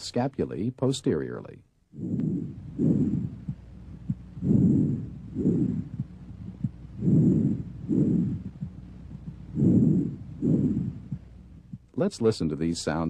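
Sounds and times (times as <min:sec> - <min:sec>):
faint heartbeat thumps: 0:01.9 - 0:11.9
breathing through a stethoscope: 0:02.0 - 0:11.2.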